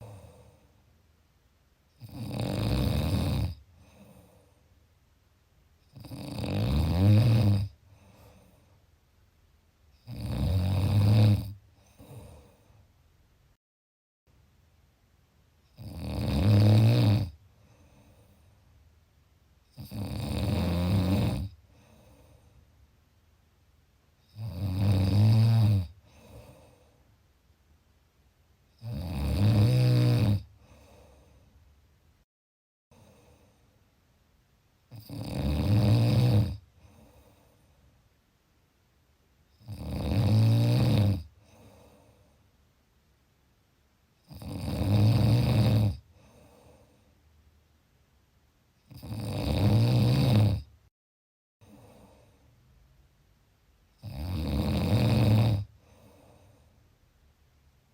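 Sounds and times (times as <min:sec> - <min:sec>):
quiet breathing: 0:00.0 - 0:01.1, 0:03.5 - 0:06.0, 0:07.7 - 0:09.3, 0:11.5 - 0:13.5, 0:17.4 - 0:18.9, 0:21.5 - 0:23.0, 0:25.9 - 0:27.7, 0:30.4 - 0:31.8, 0:32.9 - 0:34.0, 0:36.6 - 0:38.2, 0:41.2 - 0:42.8, 0:46.0 - 0:47.5, 0:51.6 - 0:52.9, 0:55.5 - 0:57.4
loud snoring: 0:02.0 - 0:04.2, 0:05.9 - 0:07.8, 0:10.0 - 0:12.6, 0:15.7 - 0:17.4, 0:19.7 - 0:21.6, 0:24.3 - 0:26.7, 0:28.8 - 0:30.8, 0:34.9 - 0:36.6, 0:39.6 - 0:41.4, 0:44.2 - 0:46.1, 0:48.9 - 0:50.7, 0:54.0 - 0:55.7
faint breath out: 0:07.9 - 0:08.9, 0:21.7 - 0:22.7, 0:26.0 - 0:27.1, 0:30.6 - 0:31.6, 0:46.1 - 0:47.2, 0:55.7 - 0:56.9.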